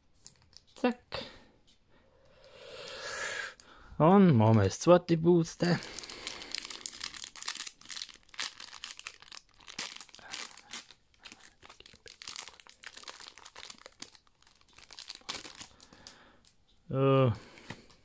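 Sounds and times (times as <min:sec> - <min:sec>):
foil wrapper tearing and crinkling: 0:05.8 - 0:16.2.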